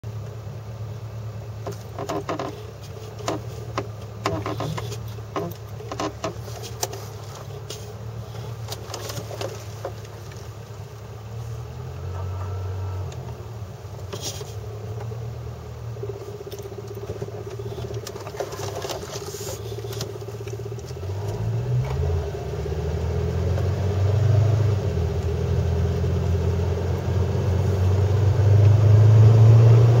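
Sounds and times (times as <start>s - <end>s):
car engine accelerating: 11.1s - 30.0s.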